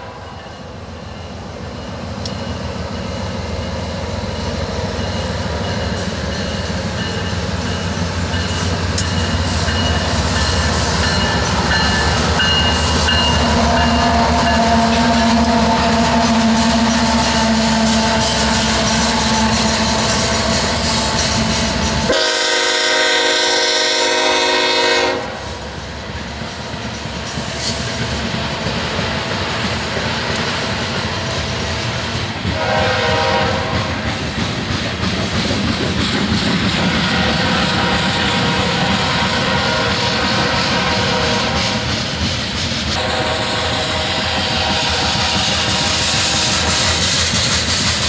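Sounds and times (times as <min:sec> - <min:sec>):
passing train rumble: 0:00.0 - 0:48.0
locomotive air horn: 0:13.3 - 0:25.6, 0:32.5 - 0:34.0, 0:36.8 - 0:41.9, 0:43.0 - 0:47.2.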